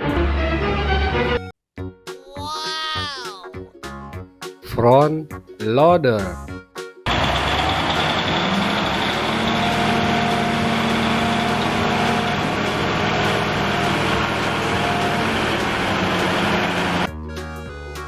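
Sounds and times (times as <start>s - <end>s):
loader engine running: 7.1s - 18.0s.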